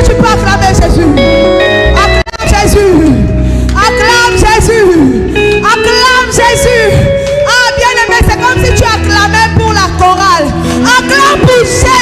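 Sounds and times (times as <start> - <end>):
keyboard chords and bass: 0.0 - 12.0.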